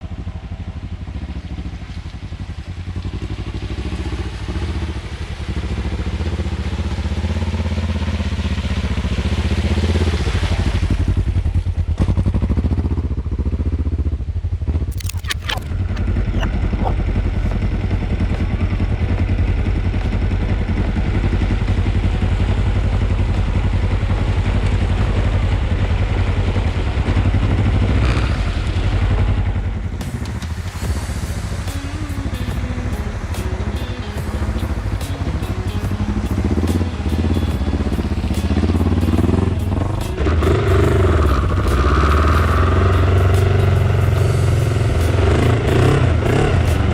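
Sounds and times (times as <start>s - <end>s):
sharp clicks: 14.9s - 17.0s
motorcycle engine revving: 36.0s - 46.9s.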